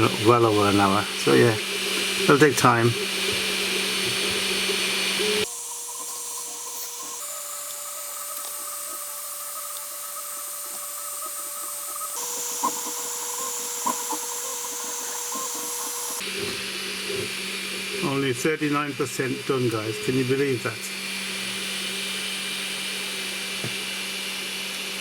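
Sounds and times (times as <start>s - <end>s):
cooling fan hiss: 0.0s - 25.0s
stepper motors whining: 0.0s - 25.0s.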